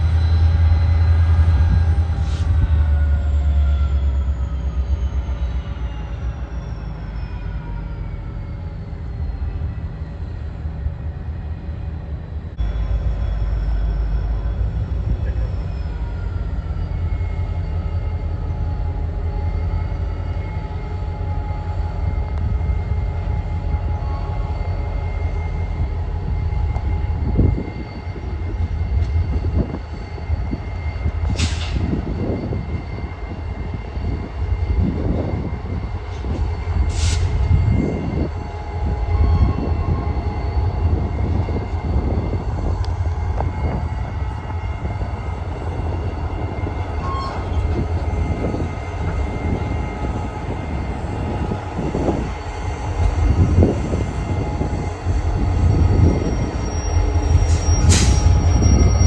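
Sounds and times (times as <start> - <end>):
diesel locomotive rumble: 0.0 - 59.0
train cars clanking: 36.0 - 59.0.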